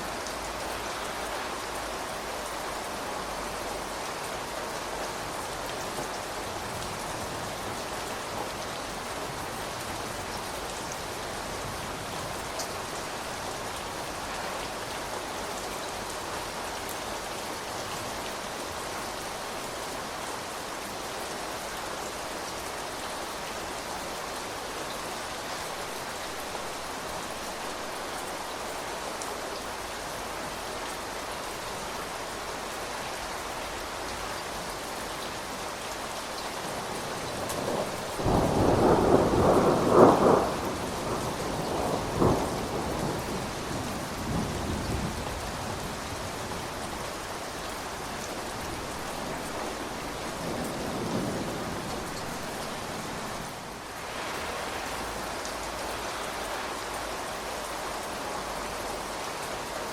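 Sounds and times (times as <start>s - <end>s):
steady rain falling: 0.0s - 59.9s
thunder rumbling and cracking: 37.3s - 45.8s.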